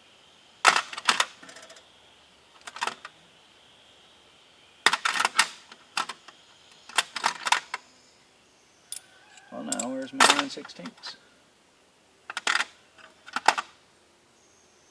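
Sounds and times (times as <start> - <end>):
metal hand tools clinking: 8.9 - 10.7.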